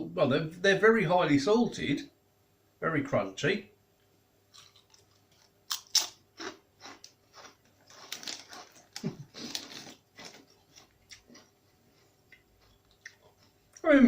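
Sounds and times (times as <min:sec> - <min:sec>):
tortilla chips being chewed: 0:04.5 - 0:13.8.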